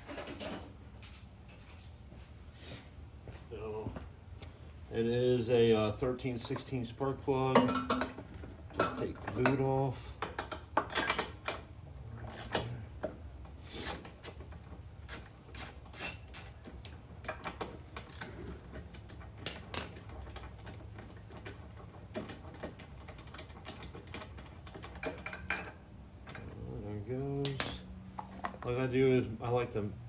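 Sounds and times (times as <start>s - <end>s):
ratchet wrench clicking: 15.1s - 16.6s.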